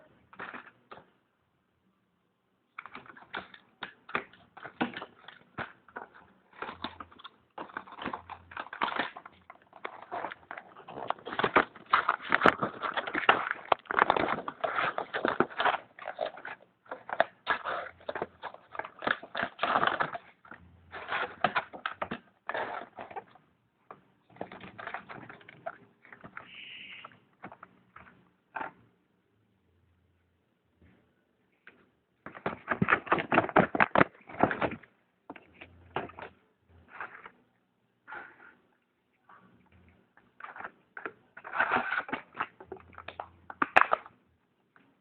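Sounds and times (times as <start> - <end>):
plastic packaging crinkling: 2.8 - 23.4, 24.3 - 27.7, 40.4 - 44.2.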